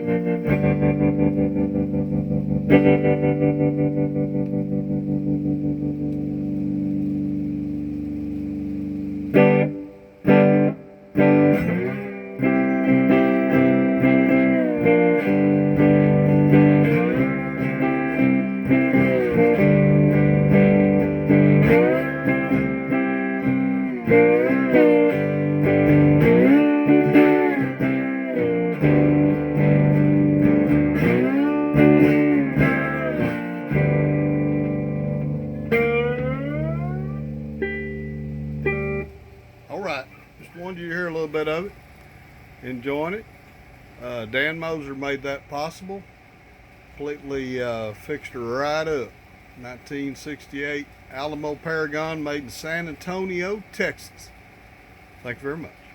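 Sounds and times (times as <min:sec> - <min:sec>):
electric guitar playing blues: 0:00.0 - 0:55.9.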